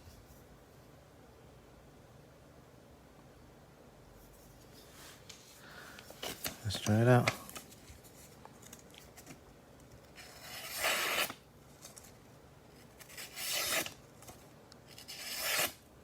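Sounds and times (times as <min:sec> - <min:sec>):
knife rasping slicing strokes: 0:15.1 - 0:15.8.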